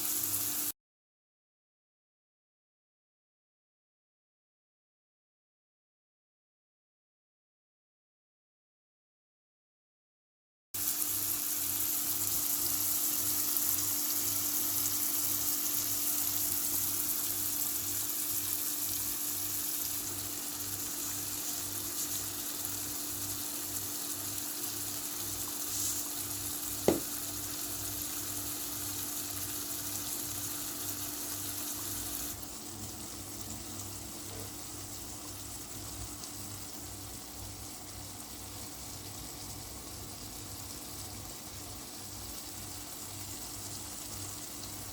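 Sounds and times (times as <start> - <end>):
peppers sizzling in a pan: 0.0 - 0.8, 10.8 - 44.9.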